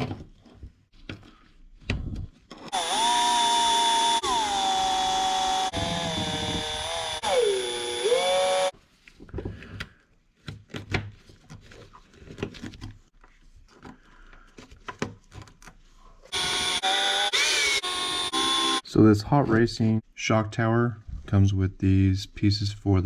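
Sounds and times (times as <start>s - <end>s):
cordless screwdriver whining: 2.7s - 8.7s, 16.3s - 18.8s.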